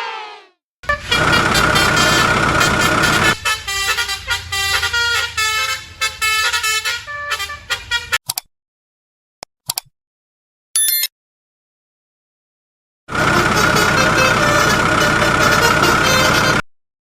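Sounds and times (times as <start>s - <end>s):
engine and horn blast: 0.8s - 8.2s, 13.1s - 16.7s
short tooting horn notes: 0.8s - 8.2s, 13.1s - 16.6s
low engine rumble: 0.9s - 6.8s, 13.1s - 16.6s.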